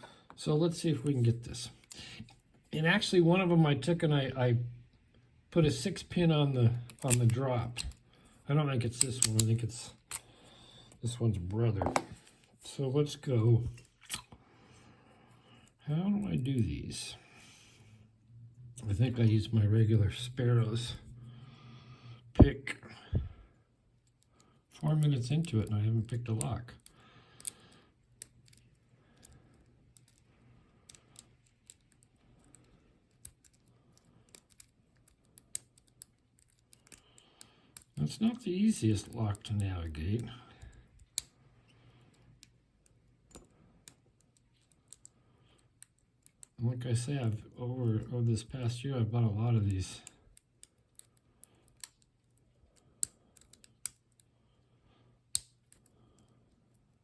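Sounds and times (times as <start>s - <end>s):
lock pick clicking in padlock: 6.9s - 8.0s, 9.0s - 10.2s, 26.4s - 30.3s, 30.9s - 38.0s, 50.3s - 52.4s, 53.0s - 54.3s, 55.3s - 56.3s.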